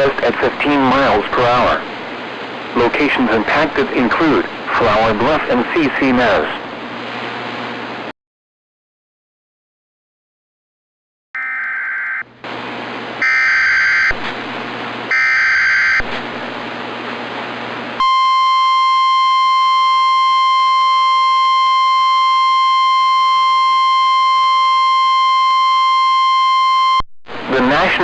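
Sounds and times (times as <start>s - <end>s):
radio hiss: 0.0s - 7.4s, 27.3s - 28.0s
steady warning alarm tone: 11.4s - 12.2s, 13.2s - 14.2s, 15.1s - 16.1s, 18.0s - 27.0s.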